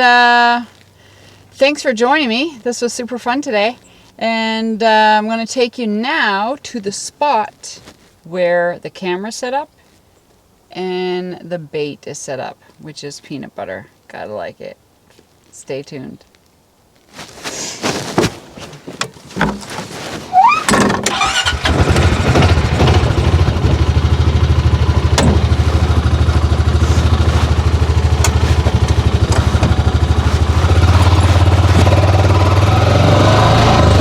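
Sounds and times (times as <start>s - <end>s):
vehicle engine starting and running: 20.3s - 34.0s
knocks: 25.1s - 25.9s.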